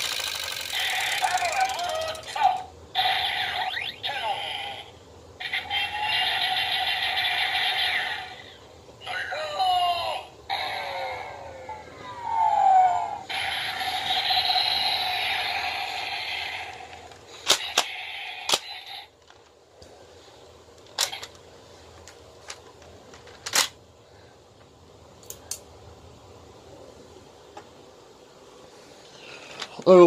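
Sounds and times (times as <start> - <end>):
plastic toy clicks: 0.0 - 2.4, 17.4 - 18.7.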